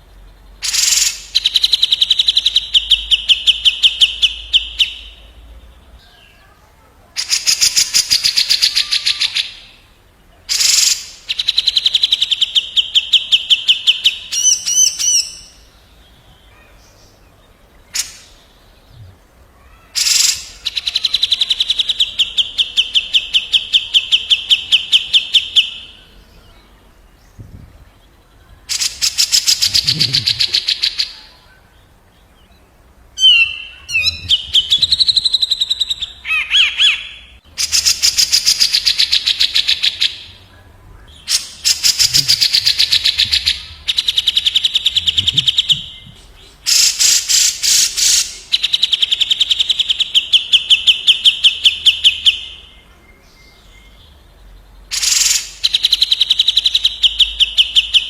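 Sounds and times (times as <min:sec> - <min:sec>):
birds rattling trills: 0:41.2 - 0:49.2.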